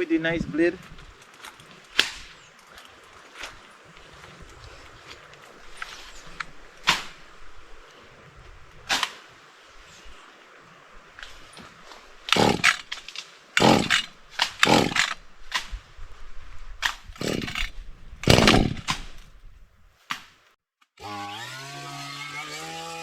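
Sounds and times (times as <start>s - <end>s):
small engine running: 12.3s - 12.8s, 13.6s - 15.2s
loud noisy strokes: 12.3s - 12.9s, 13.6s - 15.2s.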